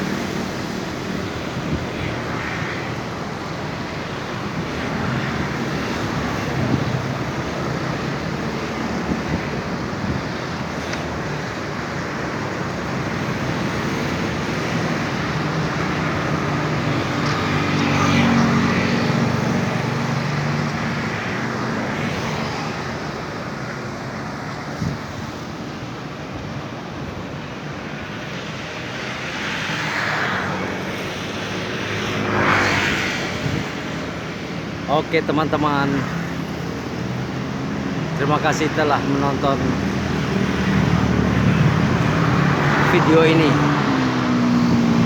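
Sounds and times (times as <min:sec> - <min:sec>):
vehicle passing: 0:29.0 - 0:45.0.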